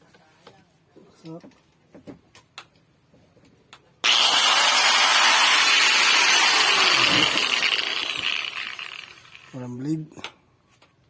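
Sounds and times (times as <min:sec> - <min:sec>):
angle grinder whirring: 0:04.0 - 0:09.6.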